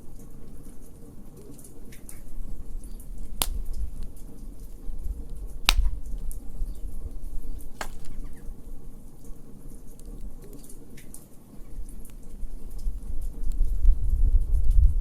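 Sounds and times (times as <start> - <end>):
wood fire crackling: 0.0 - 13.9
sharp pops from fire: 0.4 - 8.7.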